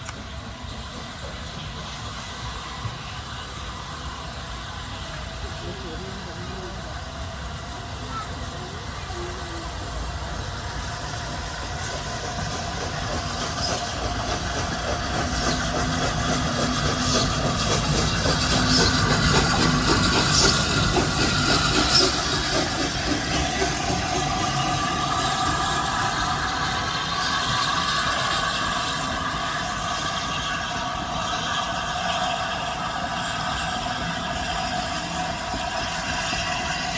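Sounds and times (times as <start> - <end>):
steam train running: 0.0 - 36.9.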